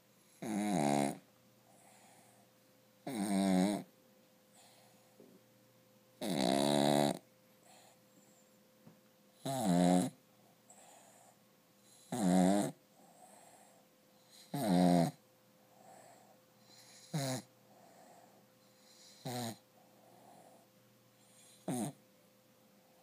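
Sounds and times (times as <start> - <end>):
dog snoring: 0.2 - 2.4, 3.0 - 3.9, 6.2 - 8.0, 9.4 - 22.0
dog breathing: 10.7 - 12.2, 15.6 - 21.9.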